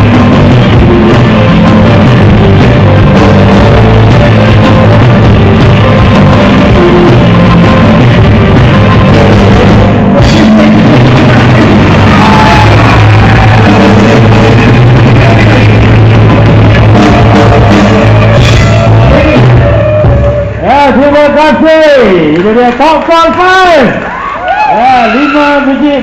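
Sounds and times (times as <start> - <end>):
drum kit beat: 0.0 - 21.1
pop-rock band playing: 0.0 - 21.7
guitar: 0.0 - 22.0
person singing: 10.2 - 20.6.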